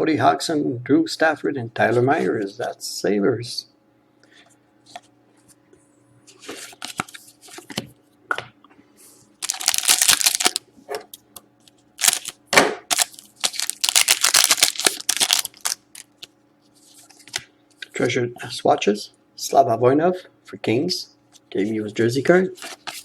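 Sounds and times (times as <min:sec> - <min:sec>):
cards being handled: 0:06.3 - 0:07.9, 0:09.4 - 0:10.6, 0:12.0 - 0:17.4, 0:22.6 - 0:23.0
card pack wrapper tearing: 0:09.4 - 0:10.6, 0:12.0 - 0:16.3, 0:22.6 - 0:23.0
wrapper crinkling: 0:09.4 - 0:10.6, 0:12.0 - 0:16.3, 0:22.6 - 0:23.0.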